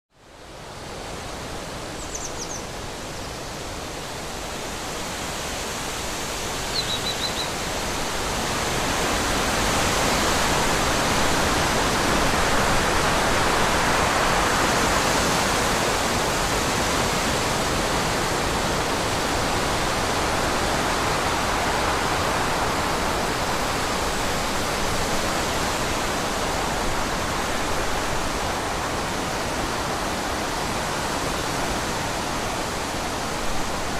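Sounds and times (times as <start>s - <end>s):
wind blowing through trees: 0.1s - 33.9s
bird chirps: 2.0s - 2.7s, 6.7s - 7.5s.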